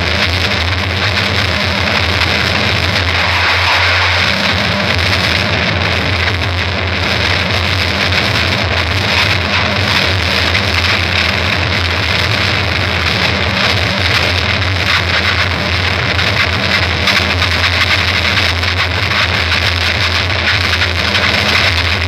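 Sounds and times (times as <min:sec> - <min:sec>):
distorted noise music: 0:00.0 - 0:22.0
low drone: 0:01.7 - 0:06.9.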